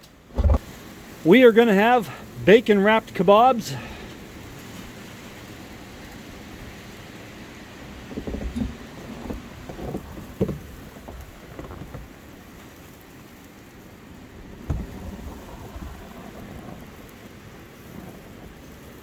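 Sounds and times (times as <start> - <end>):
wind buffeting microphone: 3.9 - 12.6, 14.2 - 19.0.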